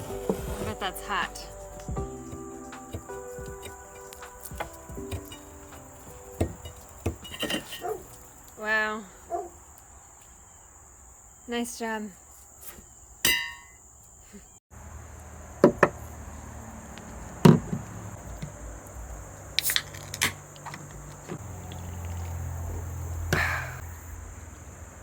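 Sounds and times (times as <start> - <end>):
crickets droning: 0.0 - 25.0
sharp knocks and clunks: 1.8 - 8.2, 15.6 - 16.0, 17.4 - 18.6.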